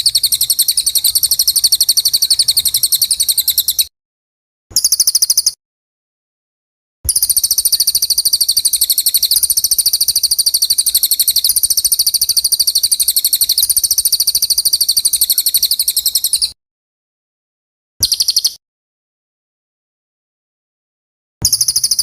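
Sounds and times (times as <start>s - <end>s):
songbird fast high trill: 0.0s - 3.9s, 7.1s - 16.6s, 18.0s - 18.6s, 21.4s - 22.0s.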